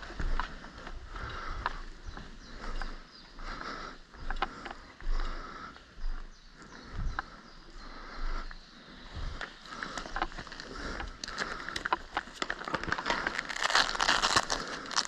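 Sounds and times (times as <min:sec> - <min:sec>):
clothing rustling and crackling: 0:09.8 - 0:15.0.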